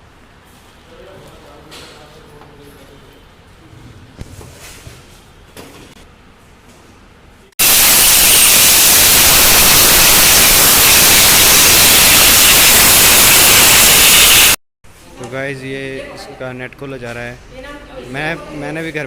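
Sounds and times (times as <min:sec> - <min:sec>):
loud steady hiss: 0:07.6 - 0:14.6.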